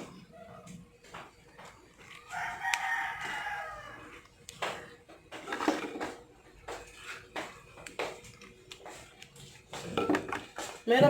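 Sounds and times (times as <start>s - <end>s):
rooster crowing: 2.2s - 4.2s.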